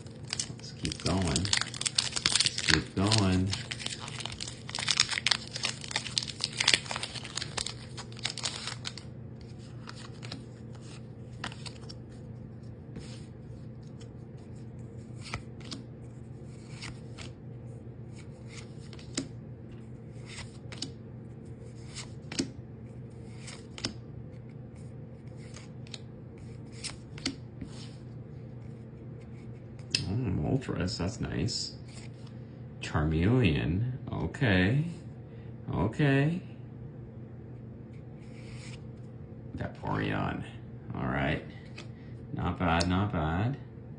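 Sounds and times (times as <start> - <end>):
foil pack crinkling: 0.0 - 9.1.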